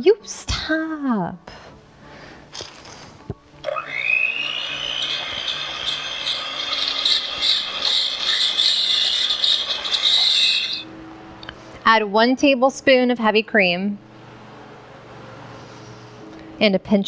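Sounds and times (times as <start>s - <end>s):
beaters scraping bowl: 2.6s - 10.9s
electric mixer motor whine: 3.6s - 10.9s.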